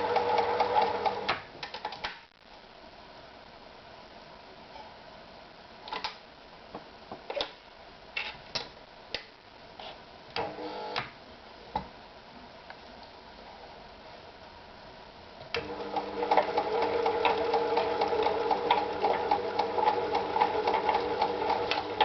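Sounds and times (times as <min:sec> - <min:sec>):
sewing machine motor whirring: 0:00.0 - 0:01.3, 0:15.6 - 0:22.0.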